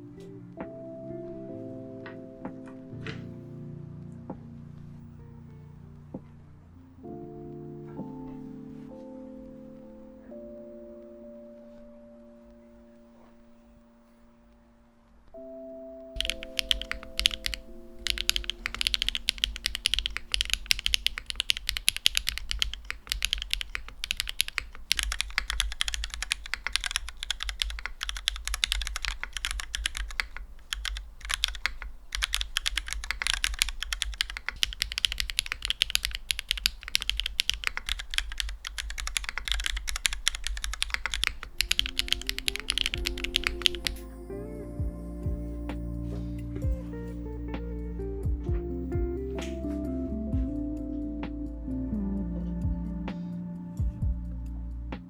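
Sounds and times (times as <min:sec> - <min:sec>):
fast keyboard typing: 0:16.2 - 0:44.0.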